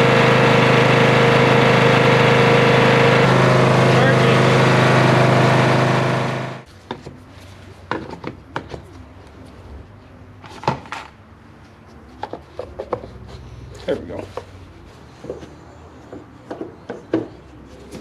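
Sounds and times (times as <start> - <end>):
lawn tractor engine running: 0.0 - 6.7.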